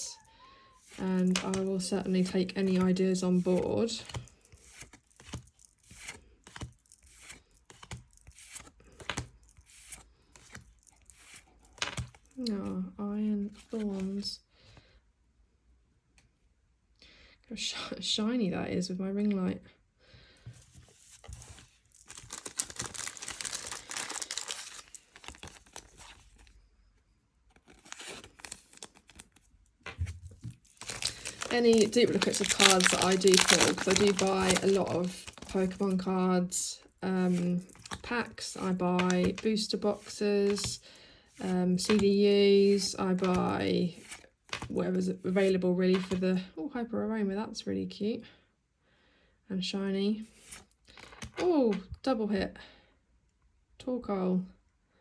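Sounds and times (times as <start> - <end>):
foil wrapper tearing and crinkling: 21.2 - 26.5, 27.6 - 29.5, 30.4 - 36.0.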